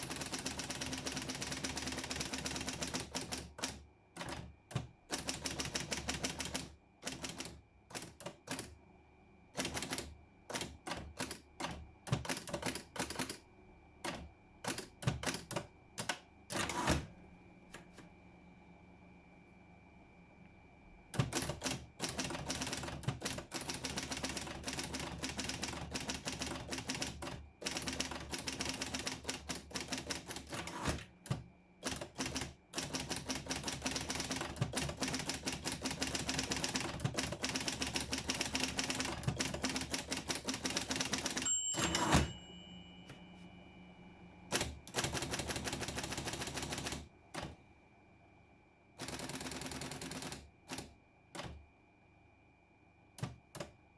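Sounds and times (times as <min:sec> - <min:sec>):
typewriter keystrokes: 0:00.0 - 0:08.8, 0:09.6 - 0:13.4, 0:14.0 - 0:17.1, 0:21.2 - 0:42.4, 0:44.5 - 0:47.5, 0:49.0 - 0:51.6, 0:53.2 - 0:53.8
faint steady whine: 0:00.0 - 0:53.9
loud typewriter clunk: 0:14.0 - 0:17.1, 0:21.2 - 0:42.5
typewriter bell ring: 0:39.7 - 0:43.4.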